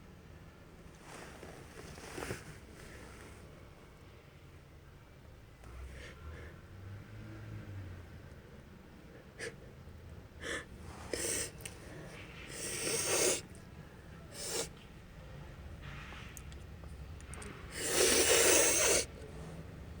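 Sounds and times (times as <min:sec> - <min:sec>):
woman sniffing: 0:10.4 - 0:13.5, 0:14.3 - 0:14.8, 0:17.7 - 0:19.3.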